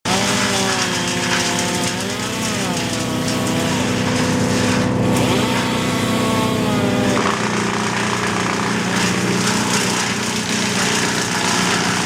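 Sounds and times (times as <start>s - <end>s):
chainsaw revving: 0.1s - 12.0s
engine drone: 0.1s - 12.0s.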